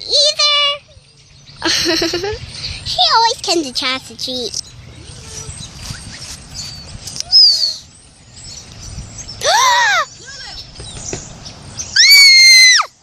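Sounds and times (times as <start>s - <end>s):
animal chirp: 4.5s - 8.0s
animal call rising and falling: 12.0s - 13.0s.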